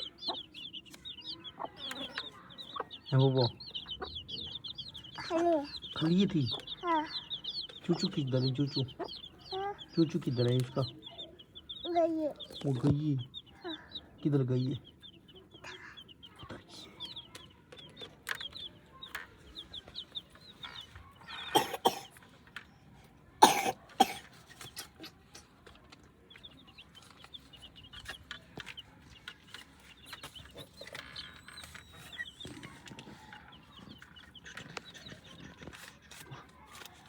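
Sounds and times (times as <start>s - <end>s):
hen clucking: 0.0s - 22.4s
chicks peeping: 0.0s - 37.0s.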